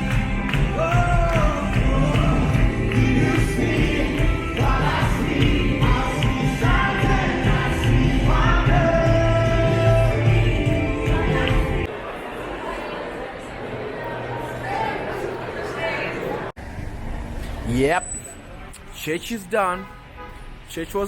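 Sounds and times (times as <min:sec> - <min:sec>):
band with steady percussion: 0:00.0 - 0:11.9
singers leading gospel song: 0:00.0 - 0:11.9.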